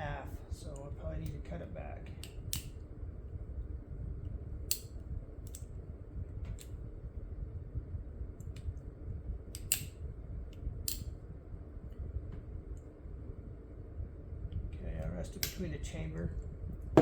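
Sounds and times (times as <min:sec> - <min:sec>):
steady low hum: 0:00.0 - 0:17.0
small metal clicks of gun: 0:09.6 - 0:09.9.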